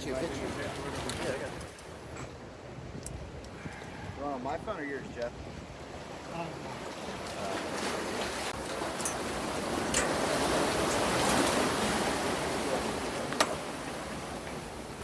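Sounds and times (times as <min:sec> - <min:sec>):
ocean surf washing in: 0:05.8 - 0:15.0.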